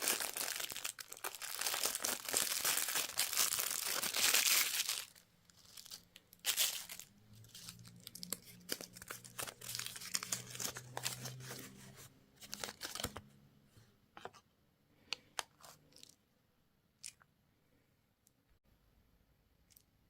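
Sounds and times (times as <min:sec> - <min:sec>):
candy wrapper crinkling: 0:00.0 - 0:11.8.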